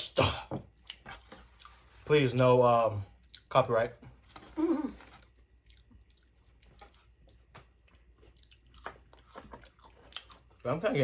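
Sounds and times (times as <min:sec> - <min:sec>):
faint chewing: 0:00.7 - 0:02.5, 0:03.1 - 0:03.6, 0:04.2 - 0:10.8.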